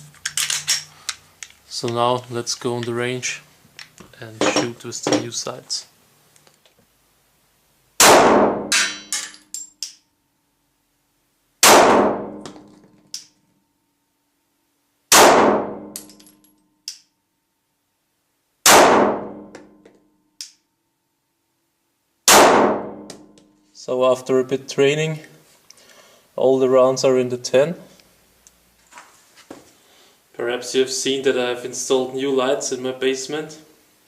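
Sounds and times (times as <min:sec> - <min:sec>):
pistol shots in small room: 0:08.0 - 0:10.2, 0:11.6 - 0:13.4, 0:15.1 - 0:16.2, 0:18.6 - 0:20.8, 0:22.2 - 0:23.4.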